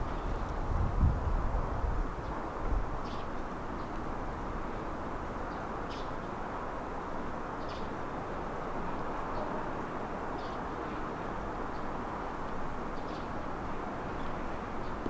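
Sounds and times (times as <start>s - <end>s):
wind buffet on microphone: 0.0s - 3.1s
rushing blizzard wind: 0.0s - 15.0s.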